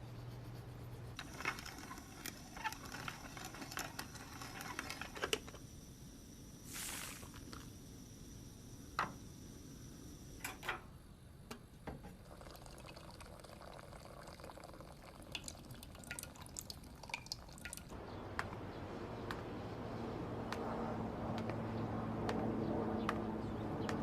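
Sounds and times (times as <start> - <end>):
water pouring or dripping: 12.2 - 18.0
sharp knocks and clicks: 22.2 - 24.0.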